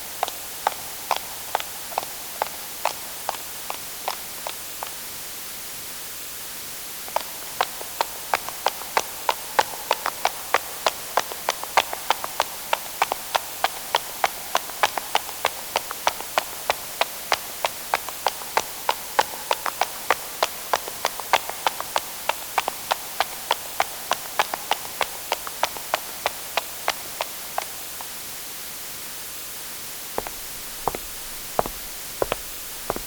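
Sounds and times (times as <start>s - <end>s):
steady hiss: 0.0s - 33.0s
footsteps on hard surface: 30.2s - 33.0s.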